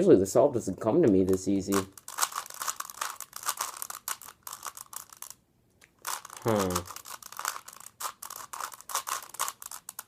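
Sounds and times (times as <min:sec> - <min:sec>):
puzzle cube plastic clicks: 0:01.3 - 0:05.4, 0:06.0 - 0:10.0
person humming: 0:06.4 - 0:06.9.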